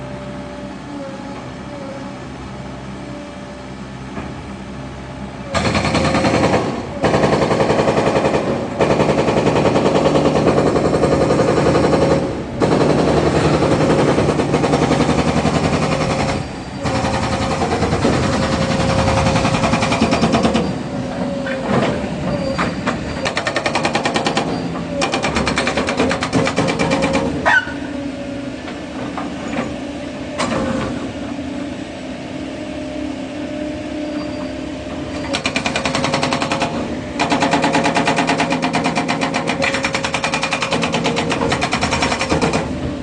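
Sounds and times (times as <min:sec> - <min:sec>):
excavator engine running: 0:00.0 - 0:43.0
hydraulic breaker hammering: 0:05.5 - 0:20.8, 0:22.6 - 0:27.4, 0:35.0 - 0:43.0.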